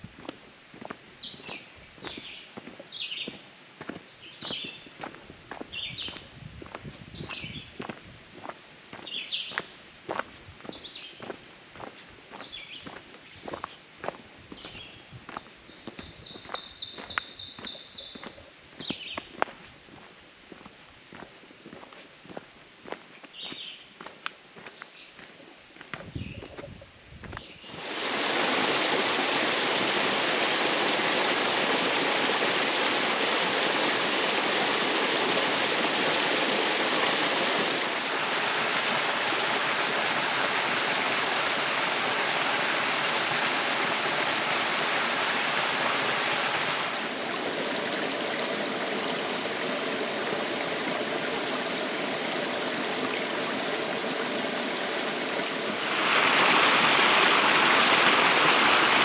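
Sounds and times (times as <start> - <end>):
water falling: 27.7 - 59.0.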